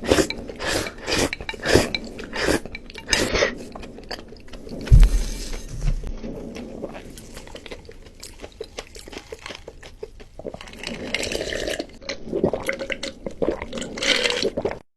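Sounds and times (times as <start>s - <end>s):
wet chewing and mouth clicks: 0.0s - 5.7s, 6.3s - 14.8s
wet slurping rushes: 0.0s - 14.8s
low thump: 4.9s - 6.2s.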